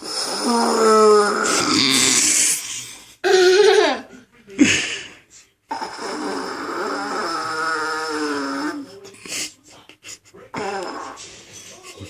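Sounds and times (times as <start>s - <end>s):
sharp snort-like sound: 0.0s - 3.0s, 5.7s - 8.9s.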